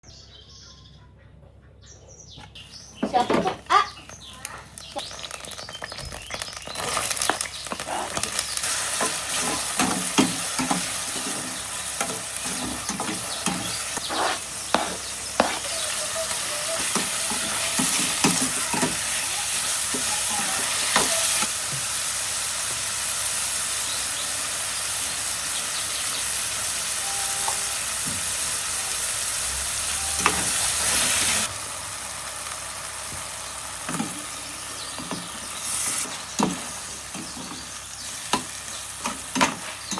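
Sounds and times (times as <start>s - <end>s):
food sizzling in a pan: 3.0s - 39.9s
utensil scraping a pan: 6.7s - 19.0s.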